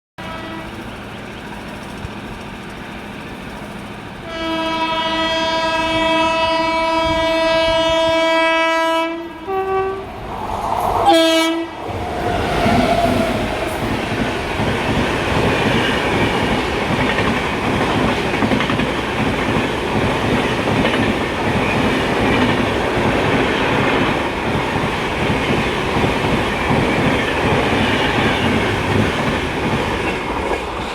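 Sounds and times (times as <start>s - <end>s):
train horn blasts: 0.2s - 0.8s, 4.2s - 10.2s, 11.0s - 11.8s
train wheels clattering on rails: 0.6s - 5.2s, 11.8s - 30.9s.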